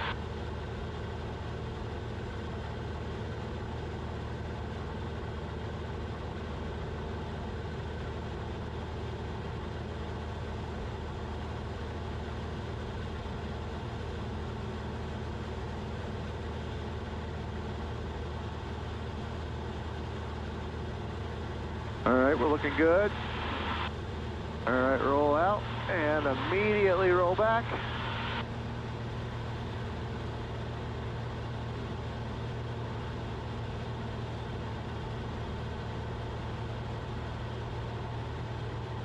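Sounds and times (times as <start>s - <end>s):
aircraft engine and propeller droning: 0.0s - 39.0s.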